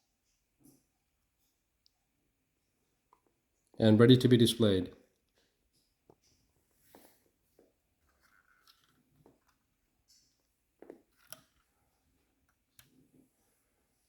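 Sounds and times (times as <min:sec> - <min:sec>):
faint clicks and taps: 0:05.1 - 0:13.6.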